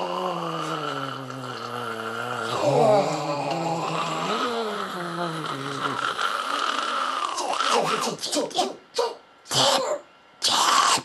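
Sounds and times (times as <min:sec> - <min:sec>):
person moaning low: 0:00.0 - 0:08.2.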